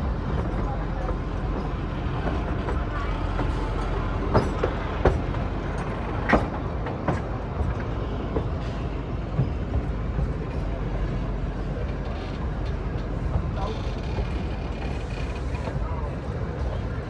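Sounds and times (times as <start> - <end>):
train knocks and clanks: 0.0 - 17.0
train rumbling: 0.0 - 17.0.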